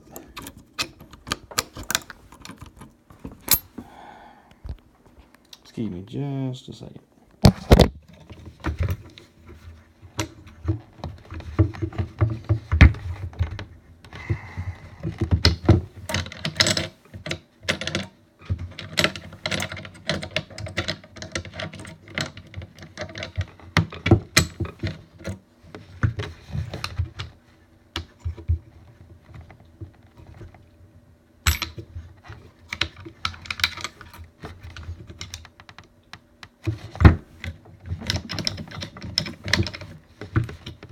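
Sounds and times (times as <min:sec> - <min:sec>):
metal rifle parts clicking: 0:00.2 - 0:03.7.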